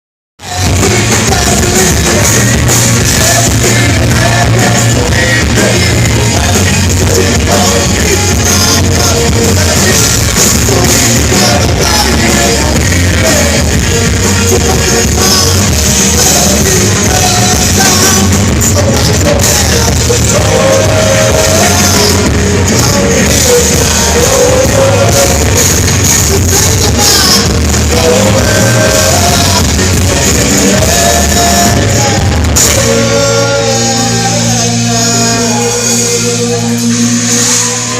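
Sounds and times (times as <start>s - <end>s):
person singing: 0.4s - 37.9s
rock band playing live: 0.4s - 37.9s.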